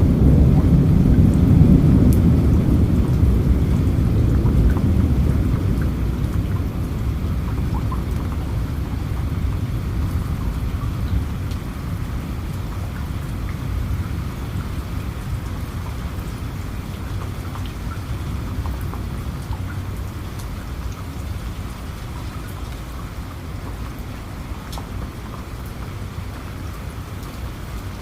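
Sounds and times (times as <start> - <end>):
rolling thunder rumble: 0.0 - 20.8
steady rain: 0.0 - 28.0.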